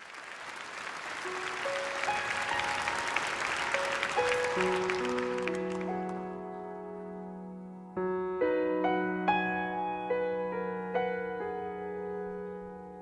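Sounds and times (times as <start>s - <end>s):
audience applause: 0.0s - 6.3s
keyboard playing chords: 1.3s - 13.0s.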